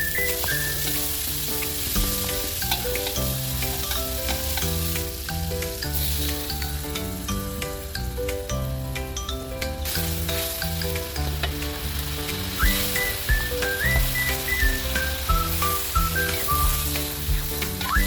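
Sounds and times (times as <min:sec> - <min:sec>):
food sizzling in a pan: 0:00.0 - 0:07.9, 0:09.8 - 0:18.0
background music: 0:00.0 - 0:18.0
oil popping: 0:09.8 - 0:18.0.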